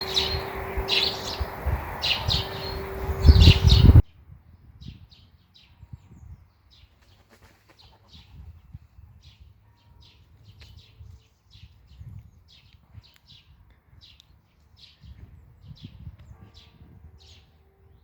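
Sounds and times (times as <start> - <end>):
loud low rumble: 0.0 - 4.0
small birds chirping: 0.0 - 4.0
steady low tone: 0.0 - 4.0.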